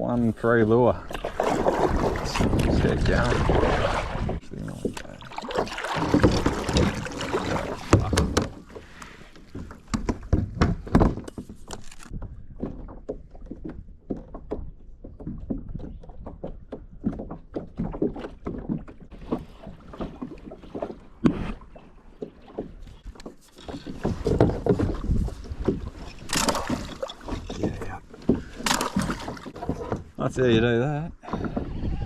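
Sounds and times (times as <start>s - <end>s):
wind: 0.0s - 32.0s
paddle splashes: 0.4s - 32.0s
water rushing: 0.6s - 9.4s
light knocks against hull: 1.1s - 21.6s, 22.2s - 32.0s.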